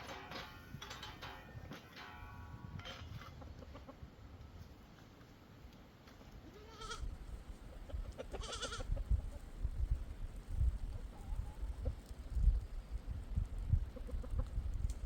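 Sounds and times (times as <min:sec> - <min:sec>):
sheep bleating: 0:06.5 - 0:07.1.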